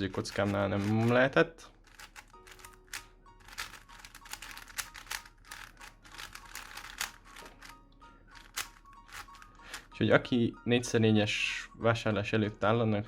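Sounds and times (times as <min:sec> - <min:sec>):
puzzle cube plastic clicks: 0:00.1 - 0:01.2, 0:01.8 - 0:07.7, 0:08.4 - 0:09.8.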